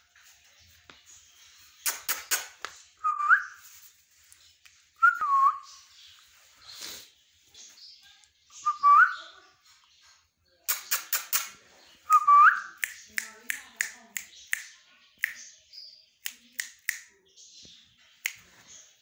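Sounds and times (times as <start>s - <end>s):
parrot sharp clicks: 1.8s - 2.7s, 10.7s - 11.6s.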